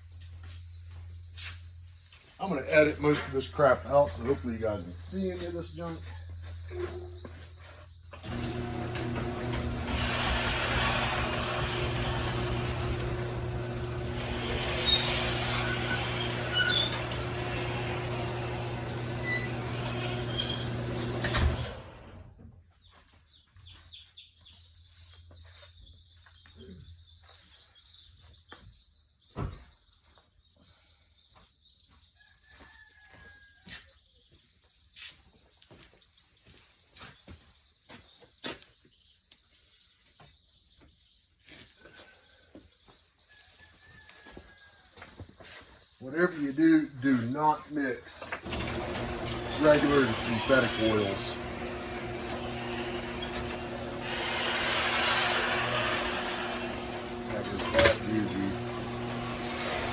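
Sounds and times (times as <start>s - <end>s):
birds chirping: 0.0s - 32.7s, 34.0s - 43.6s, 45.1s - 59.9s
rototiller engine running: 8.2s - 22.3s, 48.3s - 59.9s.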